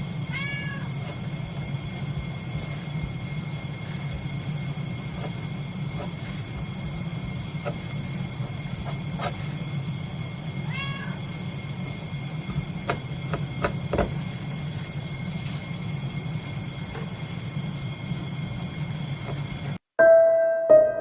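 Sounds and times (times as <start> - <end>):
steady low hum: 0.0 - 21.0
cat meowing: 0.3 - 1.0, 10.6 - 11.3.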